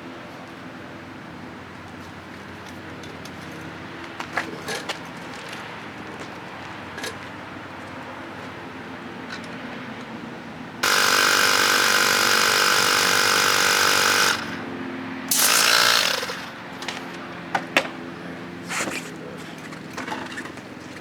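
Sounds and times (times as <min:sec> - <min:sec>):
handheld power tool running: 0:10.8 - 0:17.2.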